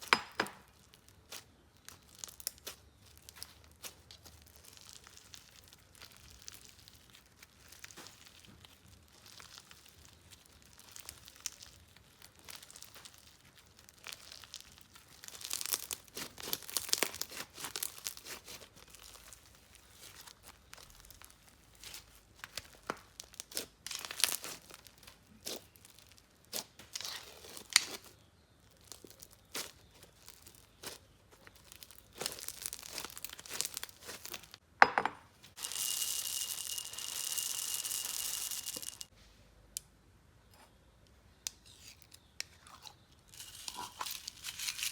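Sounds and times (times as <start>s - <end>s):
slime crackling and popping: 0.0s - 34.6s.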